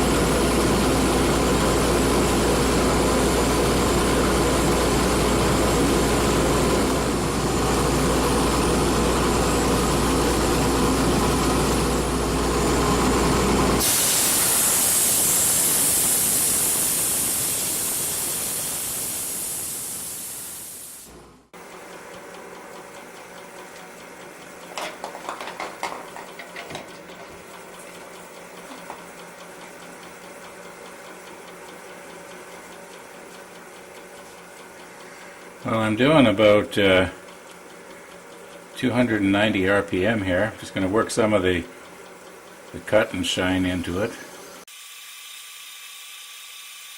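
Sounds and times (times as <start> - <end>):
wood lathe humming: 0.0 - 13.9, 31.3 - 37.5, 38.6 - 44.7
loud hiss: 13.8 - 21.1.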